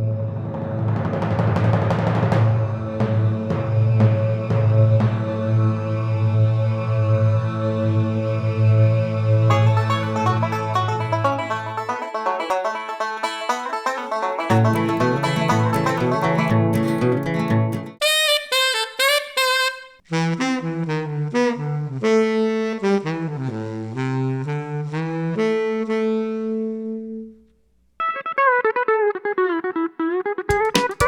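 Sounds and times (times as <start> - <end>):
wavering lead line: 9.5 - 17.8
plucked instrumental passage: 9.5 - 19.9, 28.0 - 31.0
melody with long held notes: 13.4 - 18.0.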